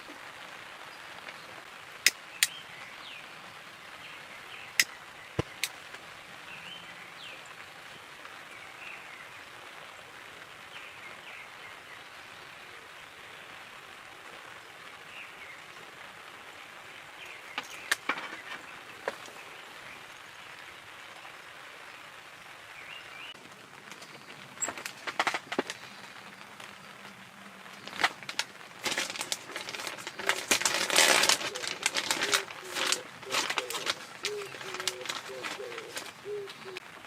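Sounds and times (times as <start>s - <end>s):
rain hiss: 0.0s - 37.0s
bird chirps: 29.1s - 36.8s.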